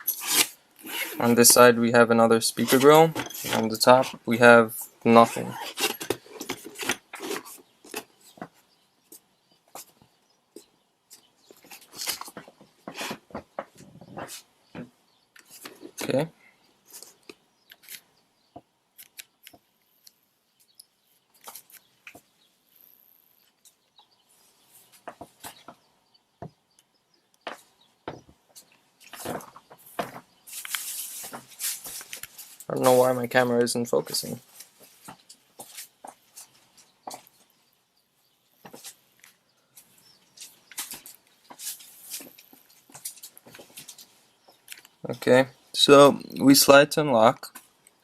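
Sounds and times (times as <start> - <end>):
hands clicking and rustling on devices: 5.6 - 16.2, 16.9 - 22.3, 26.7 - 33.0, 38.6 - 45.0.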